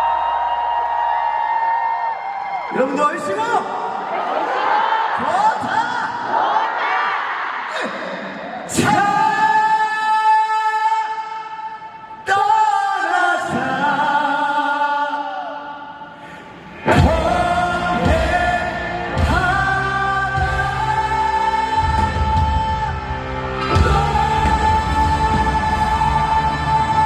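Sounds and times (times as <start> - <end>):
singer holding long notes: 8.8 - 27.0
band playing: 16.8 - 27.0.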